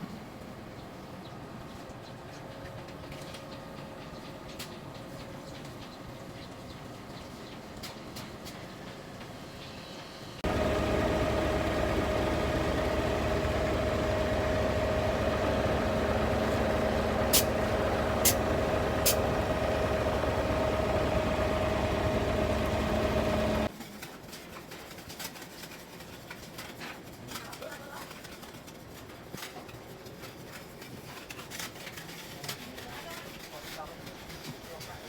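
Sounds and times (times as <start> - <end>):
truck engine running: 10.4 - 23.7.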